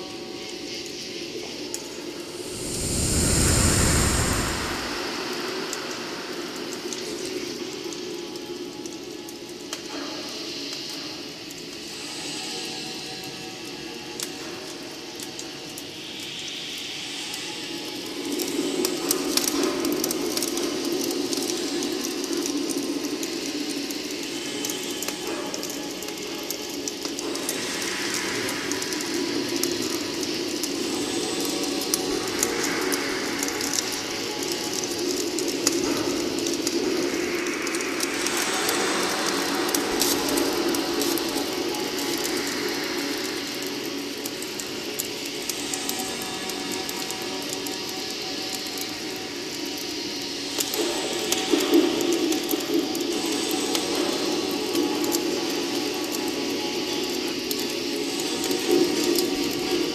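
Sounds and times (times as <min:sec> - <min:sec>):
wood crackling and popping: 0:00.4 - 0:10.0, 0:17.3 - 0:59.9
rushing flame: 0:00.8 - 0:08.9, 0:17.2 - 0:59.9.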